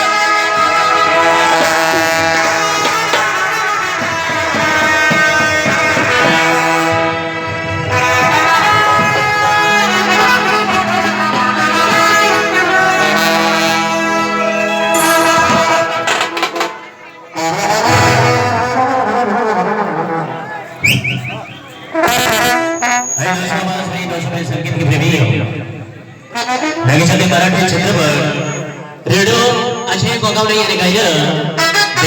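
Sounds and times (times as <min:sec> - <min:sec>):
brass band playing: 0:00.0 - 0:29.8, 0:30.8 - 0:32.0
drum hits: 0:17.8 - 0:19.2.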